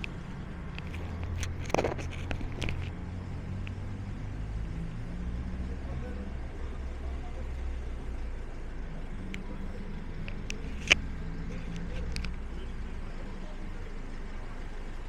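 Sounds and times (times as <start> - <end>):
traffic engine hum: 0.0 - 15.0
sharp clicks: 10.2 - 12.4.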